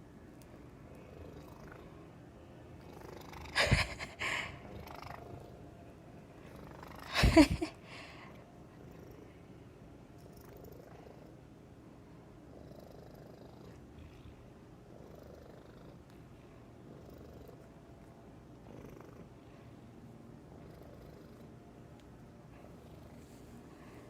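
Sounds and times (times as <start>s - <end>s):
cat purring: 0.5s - 5.7s, 6.4s - 7.8s, 8.7s - 9.5s, 10.2s - 11.5s, 12.4s - 19.8s, 20.4s - 21.6s, 22.5s - 23.9s.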